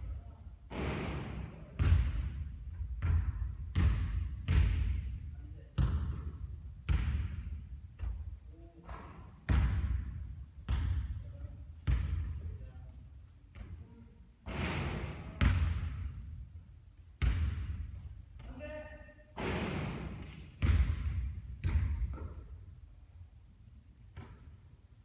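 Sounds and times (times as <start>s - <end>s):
basketballs bouncing on a court: 0.0s - 13.9s, 14.5s - 16.4s, 17.2s - 22.6s, 24.1s - 24.7s.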